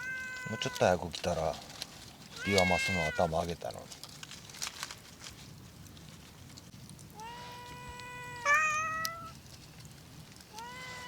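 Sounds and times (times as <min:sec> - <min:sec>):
cat meowing: 0:00.0 - 0:01.0, 0:02.4 - 0:03.3, 0:07.1 - 0:09.4, 0:10.5 - 0:11.0.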